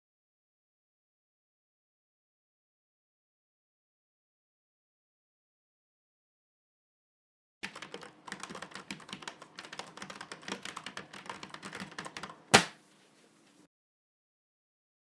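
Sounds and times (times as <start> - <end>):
fast typing on keys: 7.6 - 12.7.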